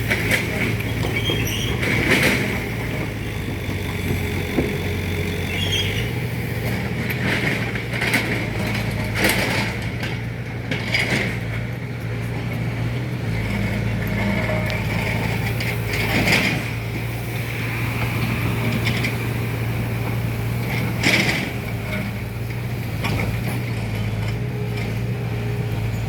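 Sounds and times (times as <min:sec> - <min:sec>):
engine idling: 0:00.0 - 0:26.0.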